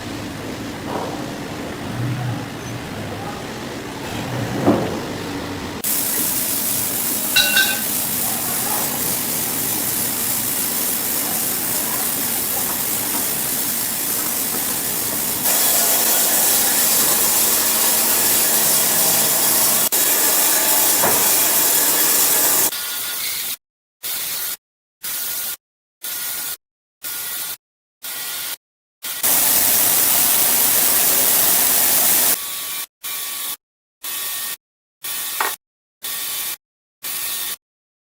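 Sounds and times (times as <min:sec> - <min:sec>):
sawmill machinery running: 0:00.0 - 0:22.7, 0:29.2 - 0:32.4.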